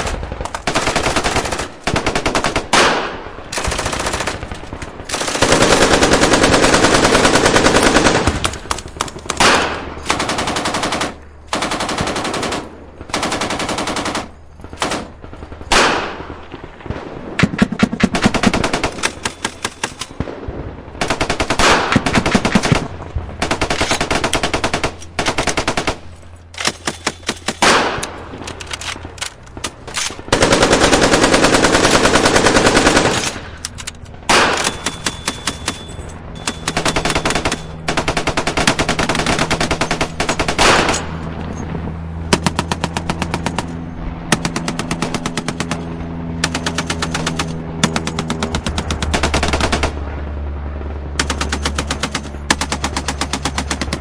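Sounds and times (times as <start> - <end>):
automatic gunfire bursts: 0.0 - 16.5, 17.4 - 20.2, 21.0 - 41.2
low steady hum: 0.0 - 54.0.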